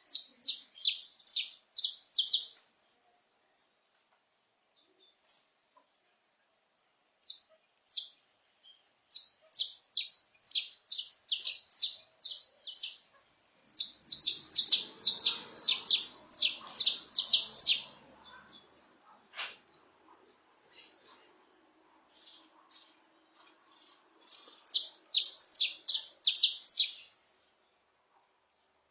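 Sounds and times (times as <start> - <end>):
finch singing: 0.0 - 2.6, 7.2 - 19.0, 20.1 - 27.4.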